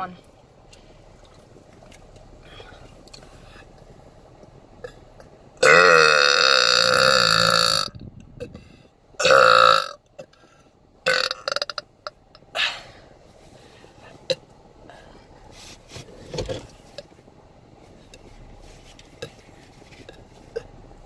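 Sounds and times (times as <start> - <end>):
woman belching: 5.6 - 8.5, 9.2 - 10.0.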